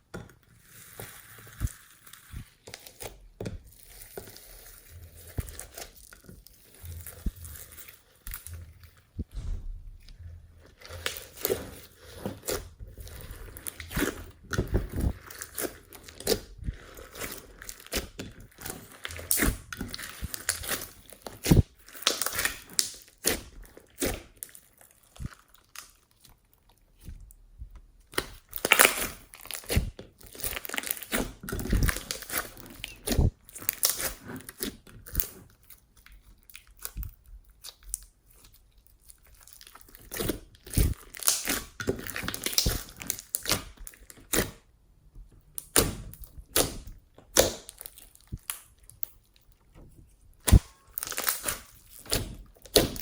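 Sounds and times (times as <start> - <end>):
hands squeezing slime: 0.5 - 9.0, 28.1 - 44.6, 50.4 - 53.0.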